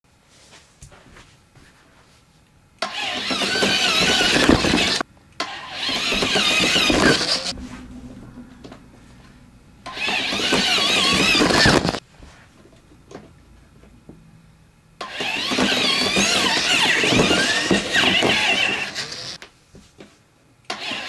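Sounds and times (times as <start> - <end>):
motor running with wavering whine: 2.8 - 12.0, 12.6 - 19.4.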